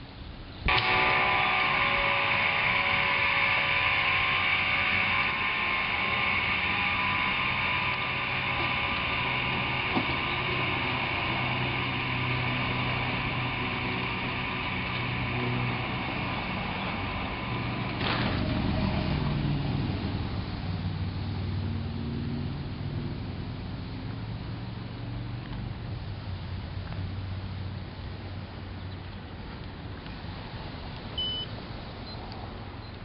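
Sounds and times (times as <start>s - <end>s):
garage door opener humming: 0.7s - 19.8s.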